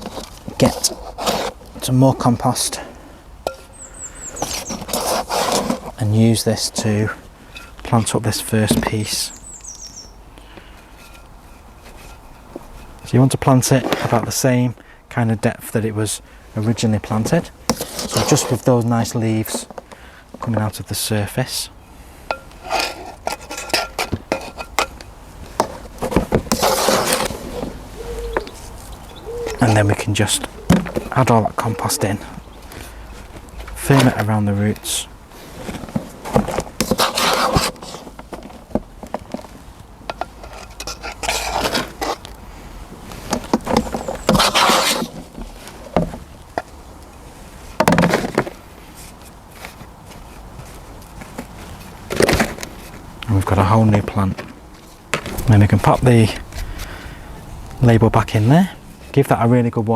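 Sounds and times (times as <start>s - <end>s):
potting compost rustling: 0.0s - 19.8s, 20.4s - 59.9s
plant container clinking: 3.4s - 3.8s, 22.3s - 32.5s.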